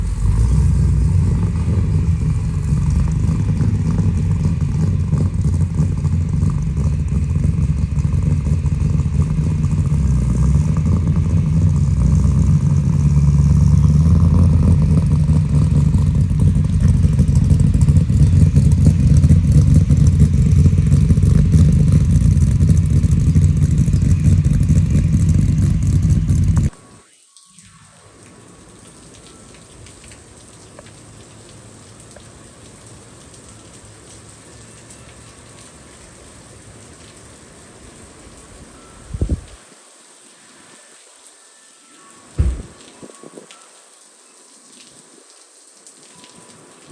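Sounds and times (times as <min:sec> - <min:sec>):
truck engine rumbling: 0:00.0 - 0:26.8, 0:42.4 - 0:43.4.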